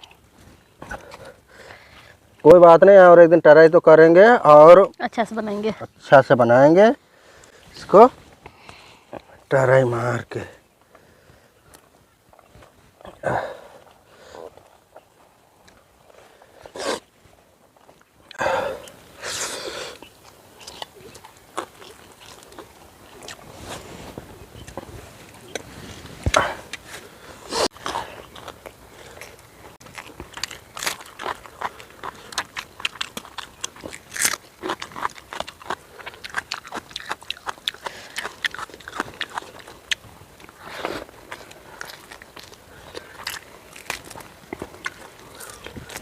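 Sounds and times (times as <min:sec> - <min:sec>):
person chewing crunchy food: 0:17.7 - 0:23.9, 0:24.5 - 0:46.0.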